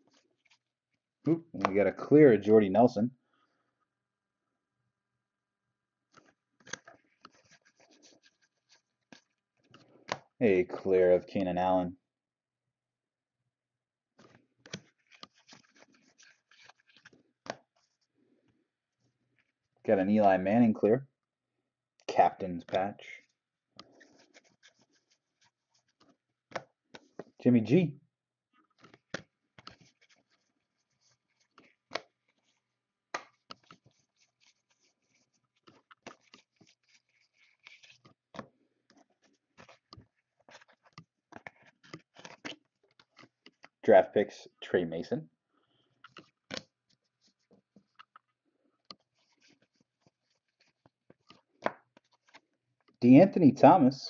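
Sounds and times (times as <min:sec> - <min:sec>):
trading cards being flipped: 0:06.1 - 0:10.2, 0:14.2 - 0:18.0, 0:23.8 - 0:27.4, 0:28.6 - 0:43.8, 0:46.0 - 0:52.4.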